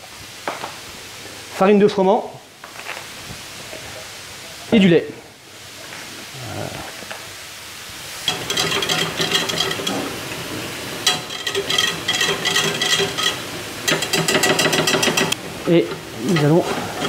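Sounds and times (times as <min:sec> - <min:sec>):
utensil scraping metal saucepan: 0:08.2 - 0:17.0.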